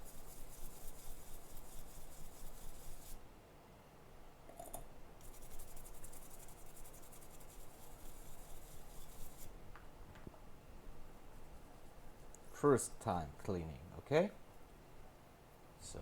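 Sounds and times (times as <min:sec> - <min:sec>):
scratchy scrubbing strokes: 0:00.0 - 0:03.2, 0:05.2 - 0:09.5, 0:11.3 - 0:12.6.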